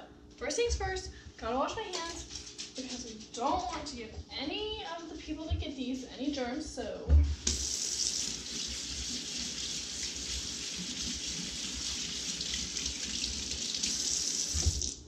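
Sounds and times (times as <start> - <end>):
tap water running: 7.2 - 15.0
hands washing under water: 7.4 - 15.0.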